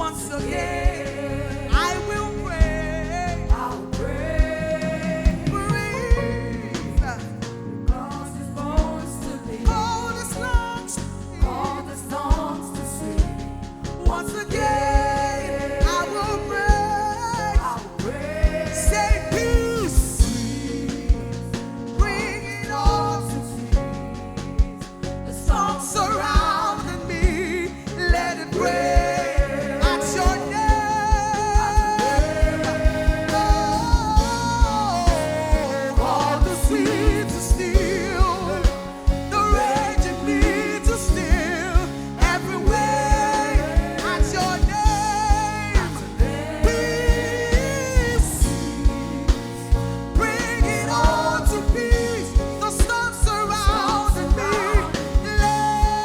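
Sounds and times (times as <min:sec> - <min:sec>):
band playing steady beat: 0:00.0 - 0:56.0
person singing with vibrato: 0:00.0 - 0:56.0.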